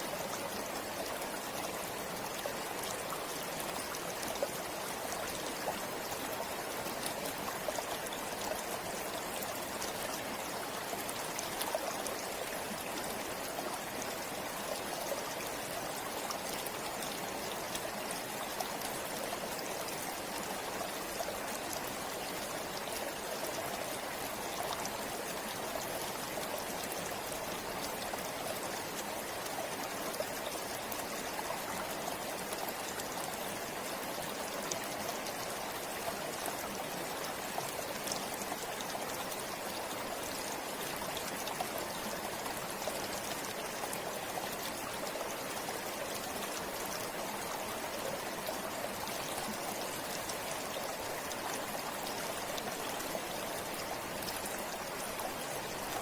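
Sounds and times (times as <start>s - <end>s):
stream flowing steadily: 0.0s - 56.0s.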